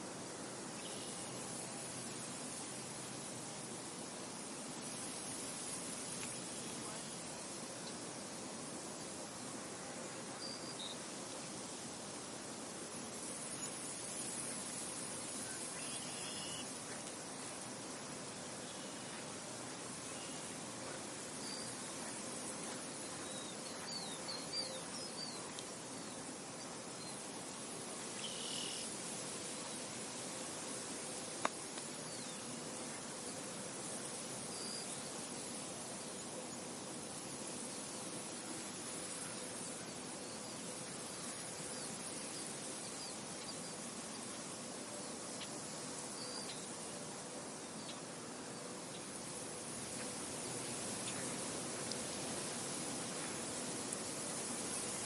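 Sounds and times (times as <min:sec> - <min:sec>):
wind hiss: 0:00.0 - 0:55.0
faint ticks: 0:06.1 - 0:06.8, 0:15.8 - 0:17.7, 0:25.2 - 0:25.8, 0:31.3 - 0:33.1, 0:49.9 - 0:52.3.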